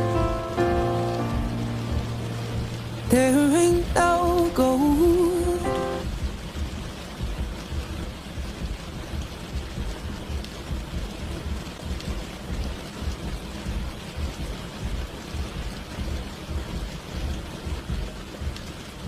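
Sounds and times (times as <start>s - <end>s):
low rumble: 0.0s - 4.4s
heavy rain falling: 0.0s - 19.0s.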